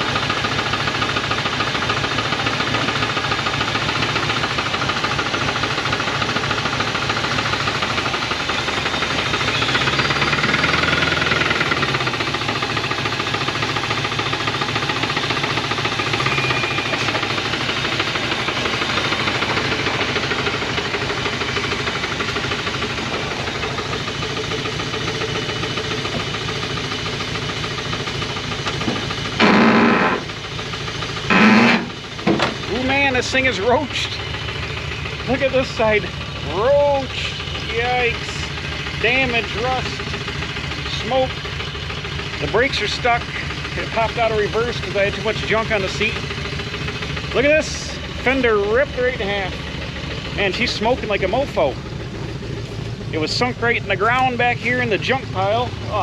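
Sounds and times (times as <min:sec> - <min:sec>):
engine running: 0:00.0 - 0:56.0
fast knocking in engine: 0:00.0 - 0:56.0.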